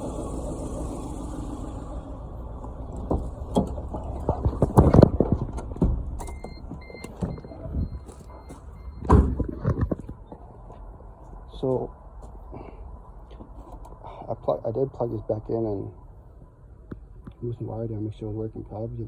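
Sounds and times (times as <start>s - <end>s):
car engine idling: 0.0s - 18.9s
irregular knocks and clicks: 3.0s - 8.2s.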